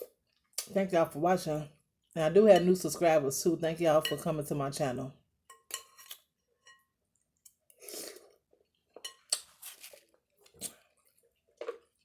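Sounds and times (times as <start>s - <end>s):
utensils clinking on a dish: 5.5s - 6.9s.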